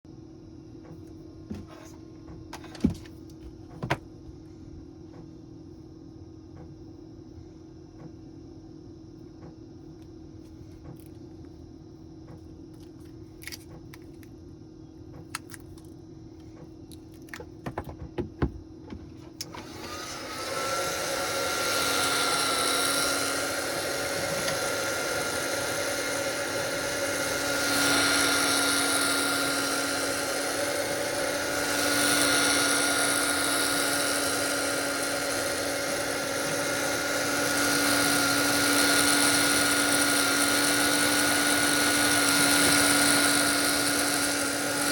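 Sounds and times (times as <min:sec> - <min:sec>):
heat gun fan rush and whine: 0:18.8 - 0:44.9.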